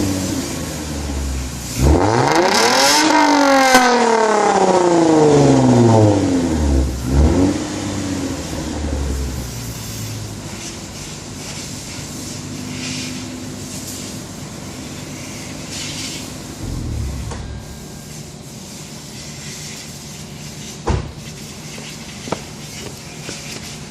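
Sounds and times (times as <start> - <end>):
car engine idling and revving: 0.0 - 12.8, 16.6 - 18.4.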